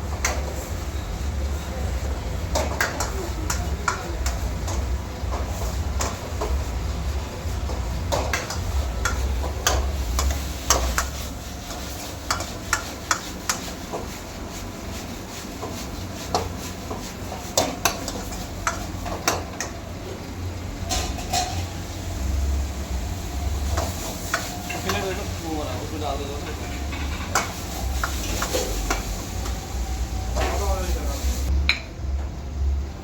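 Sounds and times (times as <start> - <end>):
metal utensils clinking on pots: 20.8 - 21.7, 26.1 - 29.1.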